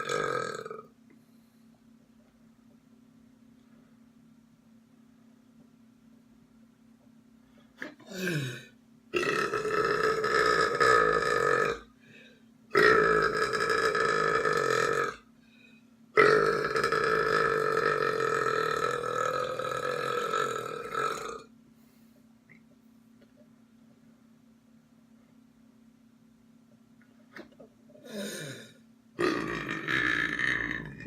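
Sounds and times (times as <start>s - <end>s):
person belching: 0.0s - 0.9s, 7.8s - 11.9s, 12.7s - 15.3s, 16.2s - 21.5s, 27.4s - 31.0s.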